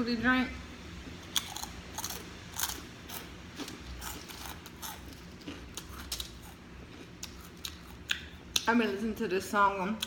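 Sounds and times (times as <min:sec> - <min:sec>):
chewing crunchy food: 0:01.2 - 0:08.7.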